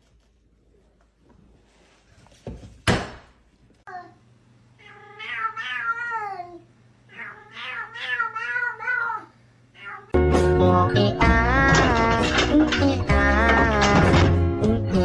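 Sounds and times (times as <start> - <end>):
cat meowing: 4.8 - 10.2
knocks: 11.6 - 14.4.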